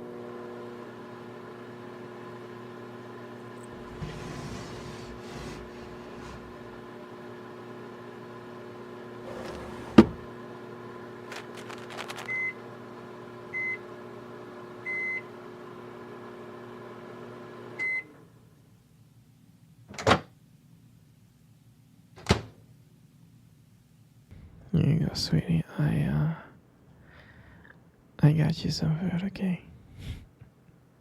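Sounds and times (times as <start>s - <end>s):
microwave oven humming: 0.0s - 19.5s.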